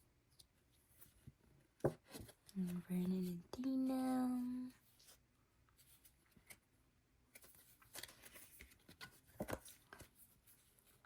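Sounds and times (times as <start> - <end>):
photo cards rustling: 7.3 - 11.0.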